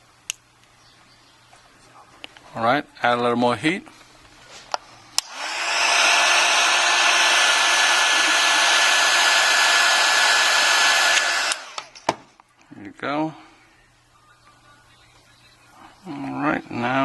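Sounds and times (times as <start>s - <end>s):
hot-air blower blowing with whine: 5.1s - 12.1s
hot-air blower switch click: 5.2s - 12.1s.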